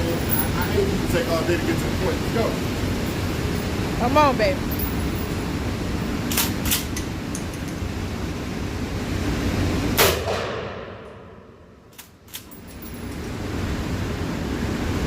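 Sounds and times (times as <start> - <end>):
shotgun shot: 10.0 - 11.4.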